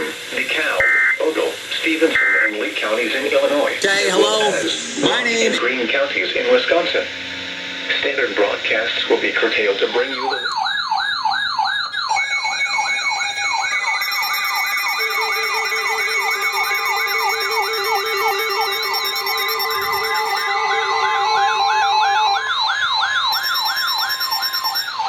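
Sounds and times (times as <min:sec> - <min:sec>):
rising electronic sweeps: 0:02.4 - 0:05.7, 0:12.2 - 0:25.0
siren-like yelp: 0:09.3 - 0:25.0
beeping alert tones: 0:12.2 - 0:21.4.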